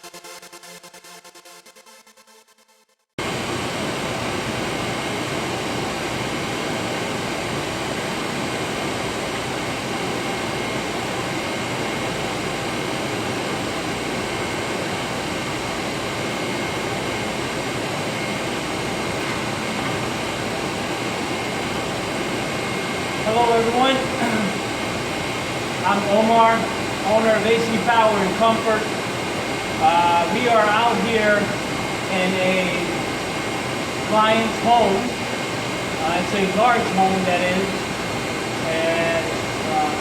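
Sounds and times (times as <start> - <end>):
hvac equipment rushing: 3.2 - 40.0
faint high whine: 13.3 - 40.0.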